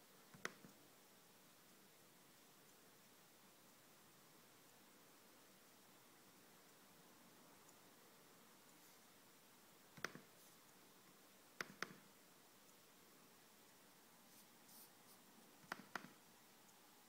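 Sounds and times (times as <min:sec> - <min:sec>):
sharp clicks: 0:09.9 - 0:10.3, 0:11.6 - 0:12.1, 0:15.6 - 0:16.2.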